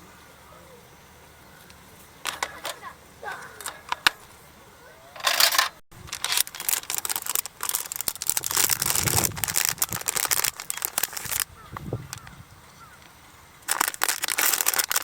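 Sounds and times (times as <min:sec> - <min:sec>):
rustling and crinkling: 0:01.6 - 0:04.5, 0:05.2 - 0:12.4, 0:13.6 - 0:15.0.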